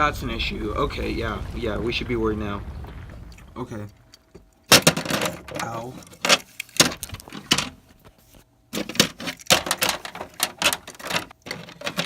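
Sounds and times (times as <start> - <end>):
toy pieces clattering: 8.8 - 12.0.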